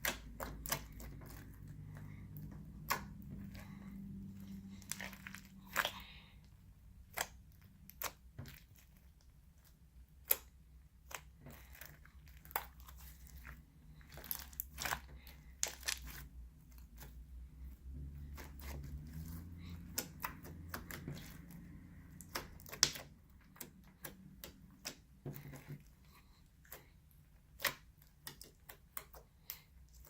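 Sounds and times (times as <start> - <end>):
crunchy slime squeezed by hand: 0.0 - 17.2.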